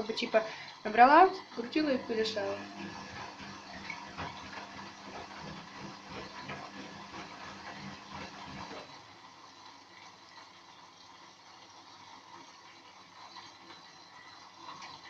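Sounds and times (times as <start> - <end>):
washing machine motor humming: 0.0 - 15.0
washing machine drum turning: 1.1 - 9.0.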